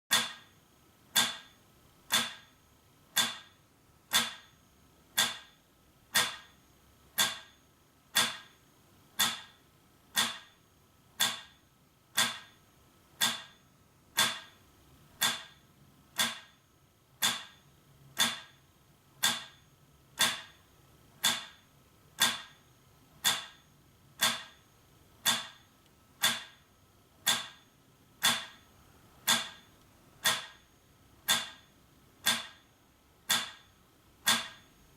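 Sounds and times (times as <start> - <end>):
metronome ticking: 29.2 - 30.6, 34.3 - 34.6.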